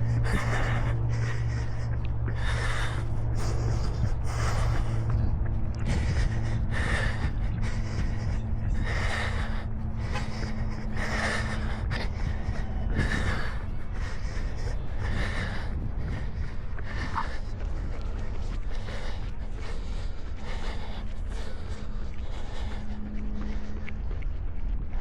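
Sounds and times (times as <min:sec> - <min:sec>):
runner breathing hard: 0:00.0 - 0:25.0
steady low rumble: 0:00.0 - 0:25.0.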